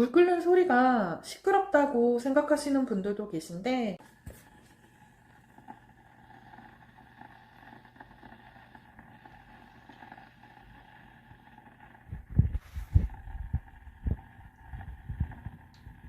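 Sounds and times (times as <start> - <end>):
humidifier water boiling: 0.0 - 16.0
low hum: 4.4 - 16.0.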